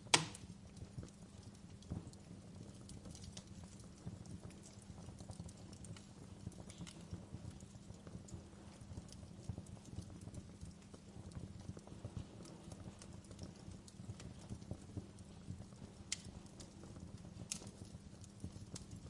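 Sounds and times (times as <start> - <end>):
wood fire crackling: 0.0 - 19.0.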